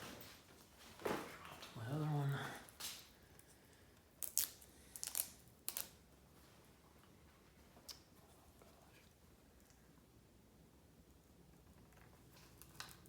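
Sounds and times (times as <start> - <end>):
velcro strip crackling: 4.2 - 6.0.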